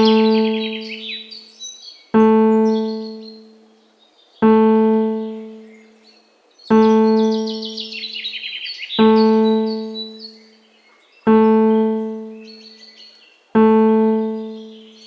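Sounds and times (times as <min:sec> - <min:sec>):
low keyboard note ringing: 0:00.0 - 0:01.3, 0:02.2 - 0:03.6, 0:04.4 - 0:05.7, 0:06.7 - 0:08.0, 0:09.0 - 0:10.2, 0:11.3 - 0:12.6, 0:13.6 - 0:15.0
birds trilling: 0:00.0 - 0:15.0.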